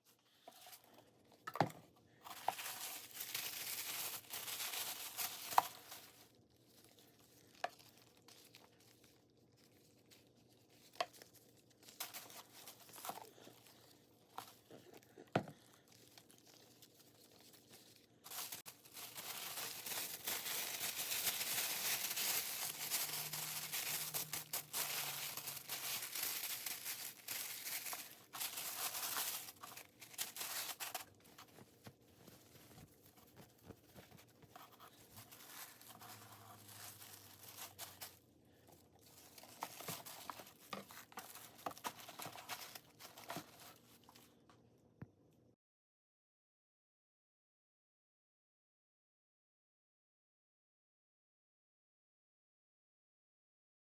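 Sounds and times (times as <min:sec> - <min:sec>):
wrapping material crinkling: 0:00.0 - 0:44.4.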